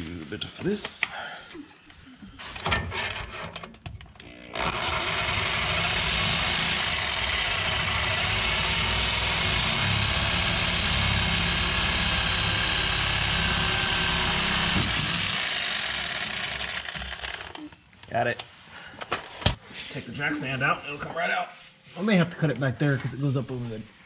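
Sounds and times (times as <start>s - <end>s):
reciprocating saw cutting metal pipe: 4.5s - 17.0s.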